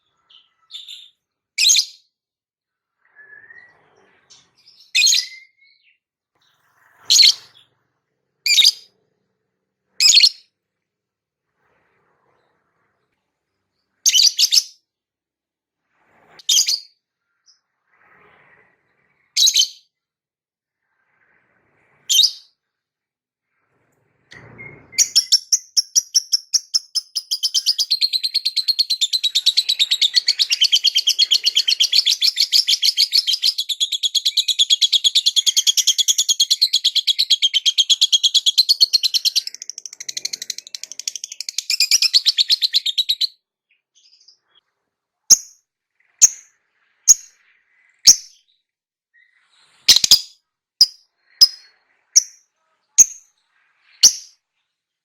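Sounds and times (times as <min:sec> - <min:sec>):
lovebird sharp chirps: 0:00.3 - 0:02.0, 0:07.1 - 0:07.6, 0:08.5 - 0:08.9, 0:10.0 - 0:10.4, 0:14.1 - 0:14.8, 0:19.4 - 0:19.8, 0:24.6 - 0:43.4, 0:45.3 - 0:45.6, 0:46.2 - 0:46.5, 0:47.1 - 0:47.4, 0:48.0 - 0:48.5, 0:49.8 - 0:54.4.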